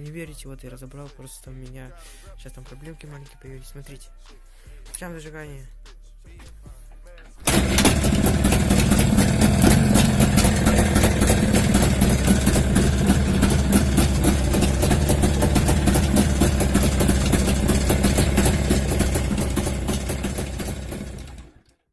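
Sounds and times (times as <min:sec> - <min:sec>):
two-stroke engine idling: 0:07.4 - 0:21.8.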